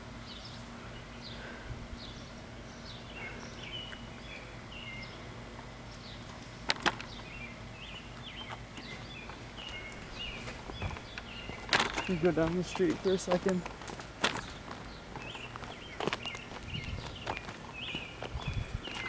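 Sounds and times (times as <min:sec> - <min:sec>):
faint steady hum: 0:00.0 - 0:19.0
small birds chirping: 0:00.0 - 0:19.0.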